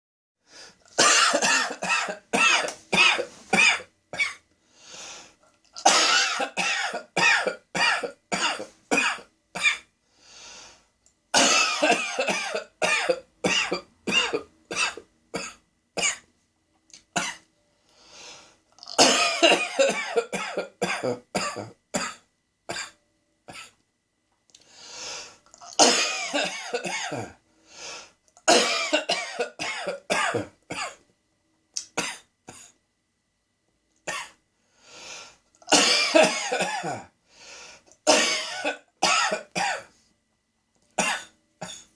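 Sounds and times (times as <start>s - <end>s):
drawn-in breath: 0.4s - 0.9s, 4.6s - 5.5s, 10.0s - 10.9s, 17.7s - 18.7s, 24.6s - 25.5s, 27.5s - 28.2s, 34.6s - 35.5s, 37.2s - 38.0s
man coughing: 1.0s - 4.4s, 5.8s - 9.8s, 11.4s - 16.2s, 18.9s - 23.8s, 25.7s - 27.4s, 28.5s - 31.0s, 35.7s - 37.1s, 38.1s - 39.9s.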